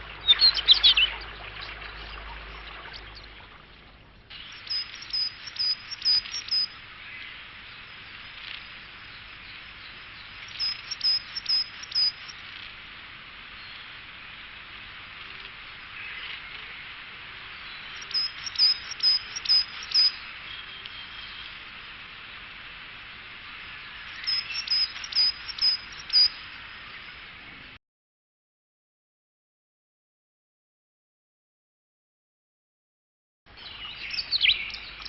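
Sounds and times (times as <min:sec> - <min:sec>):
songbird singing: 0:00.0 - 0:12.4, 0:15.3 - 0:22.0, 0:23.4 - 0:27.8, 0:33.5 - 0:35.0
steady background hiss: 0:00.0 - 0:27.8.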